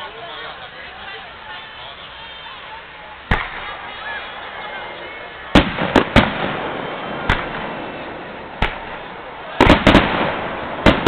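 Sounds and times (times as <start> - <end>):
fireworks bangs: 3.2 - 11.0.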